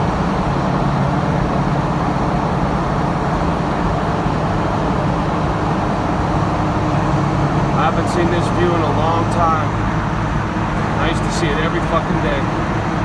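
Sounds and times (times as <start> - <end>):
truck engine drone: 0.0 - 13.0.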